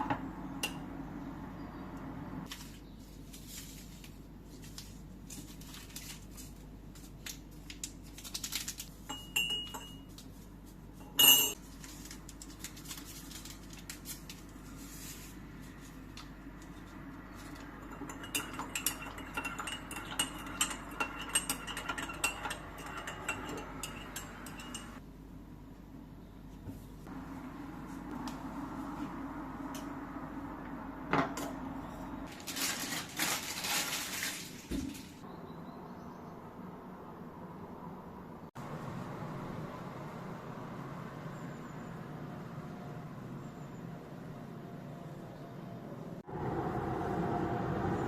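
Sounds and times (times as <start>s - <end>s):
dishes and cutlery clinking: 9.1s - 10.2s, 11.0s - 11.6s, 17.4s - 25.0s.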